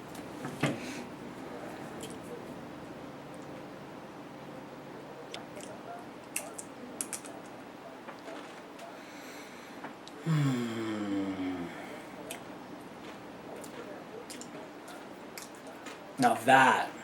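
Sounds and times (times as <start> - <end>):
small sharp eating clicks: 5.3 - 7.6, 12.2 - 16.0.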